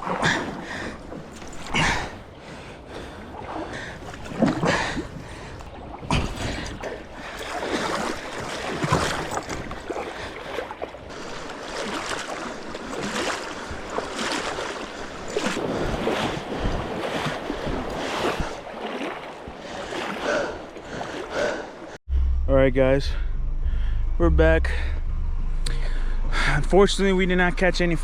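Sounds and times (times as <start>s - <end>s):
paddle strokes splashing: 0.0s - 22.0s
water washing around hull: 0.0s - 22.0s.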